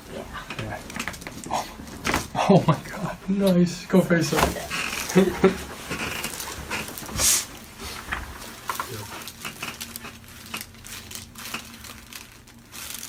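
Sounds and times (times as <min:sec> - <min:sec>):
rustling and shuffling on a table: 0:04.2 - 0:13.0
small clicks and creaks: 0:08.1 - 0:13.0.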